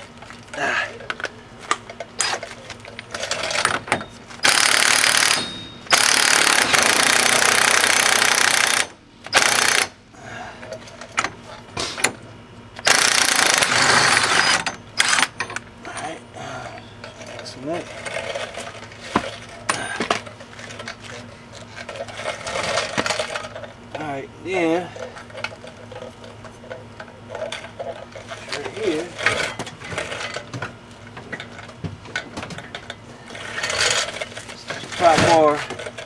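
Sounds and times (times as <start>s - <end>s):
impact wrench hammering: 3.5s - 9.9s, 12.8s - 15.6s
tool clanks: 5.3s - 6.0s.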